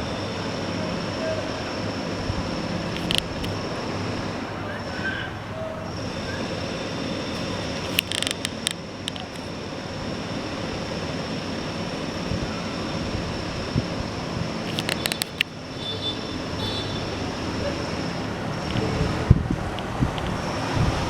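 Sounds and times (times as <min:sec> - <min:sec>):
road and wind noise: 0:00.0 - 0:21.0
sharp clicks: 0:02.9 - 0:03.6, 0:07.4 - 0:09.5, 0:14.7 - 0:15.6.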